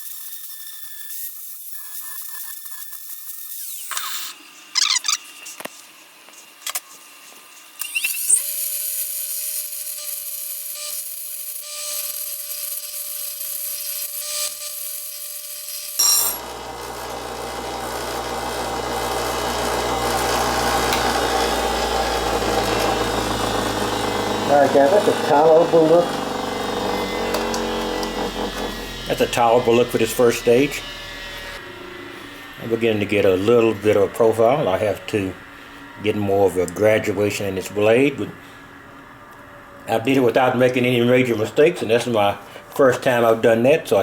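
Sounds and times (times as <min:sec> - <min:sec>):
angle grinder grinding steel: 0:06.9 - 0:38.5.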